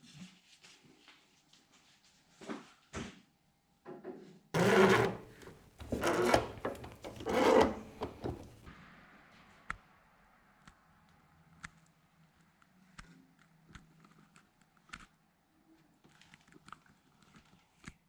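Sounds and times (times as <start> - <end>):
rough scraping across wood: 4.6 - 8.6.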